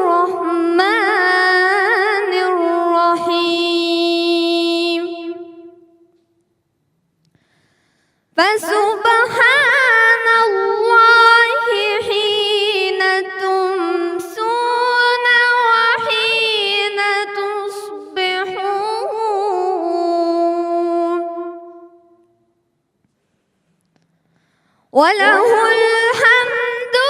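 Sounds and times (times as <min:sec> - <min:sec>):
person chanting recitation: 0:08.4 - 0:21.9, 0:25.0 - 0:27.0.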